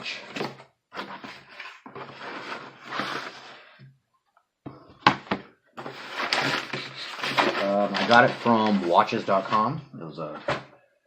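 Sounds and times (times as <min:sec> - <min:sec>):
packaging rustling and scraping: 0:00.0 - 0:03.8, 0:05.8 - 0:09.7.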